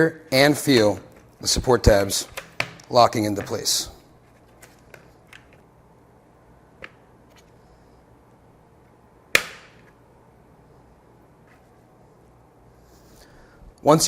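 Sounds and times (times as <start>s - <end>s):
sharp plastic snap: 9.3s - 10.0s.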